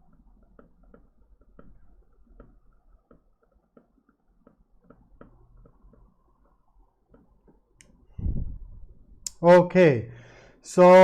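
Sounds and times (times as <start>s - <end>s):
faint small clicks and ticks: 0.0s - 8.2s.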